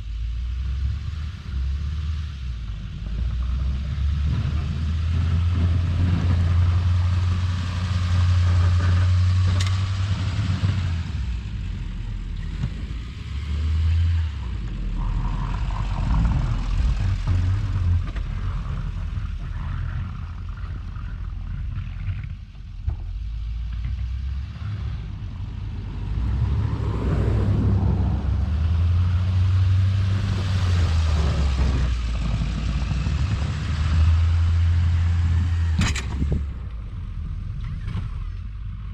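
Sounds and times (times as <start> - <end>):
loud diesel engine running: 30.1 - 37.4.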